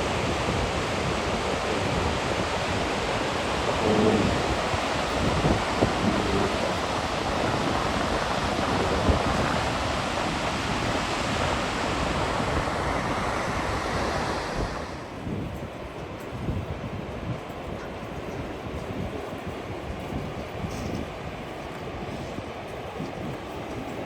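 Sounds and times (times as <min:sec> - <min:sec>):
waterfall roaring: 0:00.0 - 0:15.4
wind buffeting microphone: 0:00.0 - 0:24.0.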